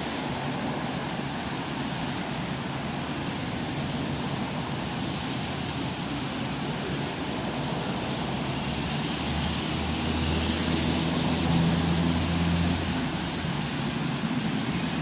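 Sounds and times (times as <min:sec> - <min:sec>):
rain on wet street: 0:00.0 - 0:15.0
vehicle passing: 0:08.7 - 0:13.4.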